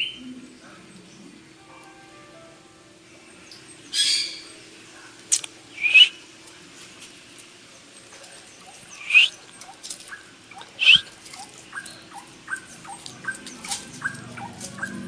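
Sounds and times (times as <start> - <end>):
animal squawks: 8.8 - 15.0.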